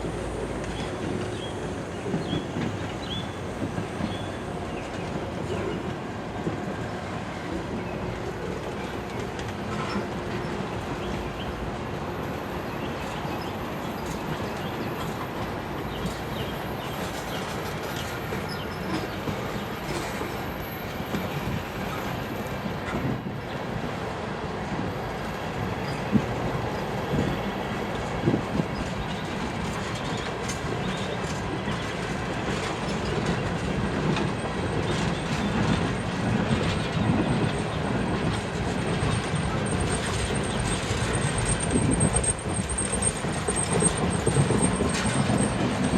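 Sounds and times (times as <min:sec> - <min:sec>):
train wheels clicking over rail joints: 0:00.0 - 0:07.0, 0:25.8 - 0:45.9.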